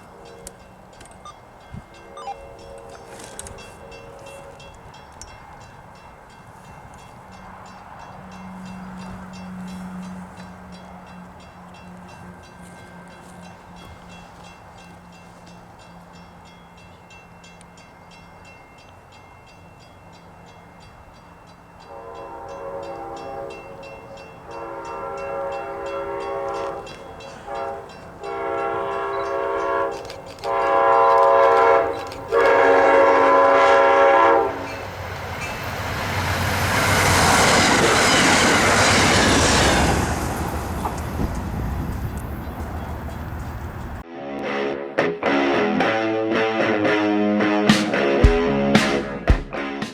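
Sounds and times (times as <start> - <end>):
train horn blasts: 0.0 - 0.8, 21.8 - 35.0
train passing clattering: 0.0 - 44.0.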